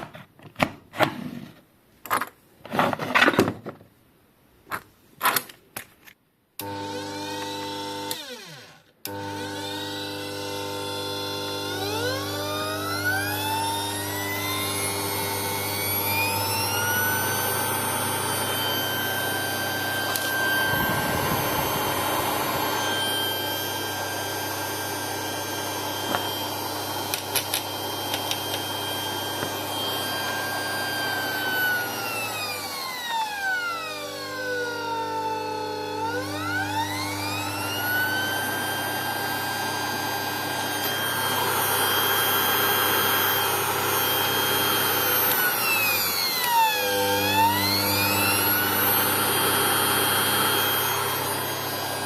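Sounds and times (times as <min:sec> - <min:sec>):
bench grinder motor whine: 0:06.6 - 0:52.0.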